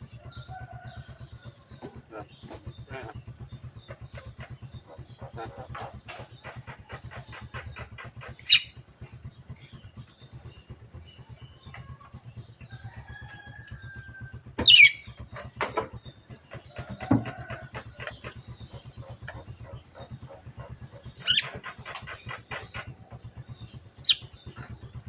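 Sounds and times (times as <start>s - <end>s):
bird calling harshly: 4.9s - 8.8s, 19.1s - 23.0s.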